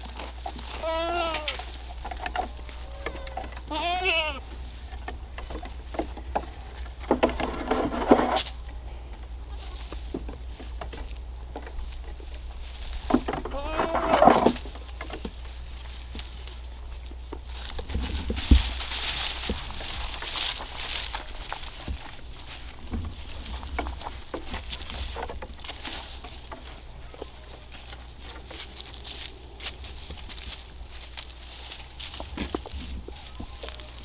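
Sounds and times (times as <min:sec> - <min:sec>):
baby goats bleating: 0:00.5 - 0:04.7, 0:09.4 - 0:10.0, 0:13.3 - 0:14.5, 0:32.4 - 0:34.0.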